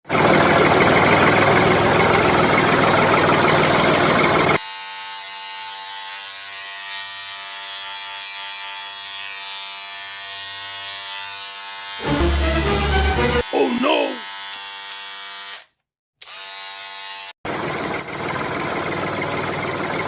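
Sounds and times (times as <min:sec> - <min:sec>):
small electric motor buzzing: 0:04.6 - 0:12.1, 0:14.2 - 0:17.4.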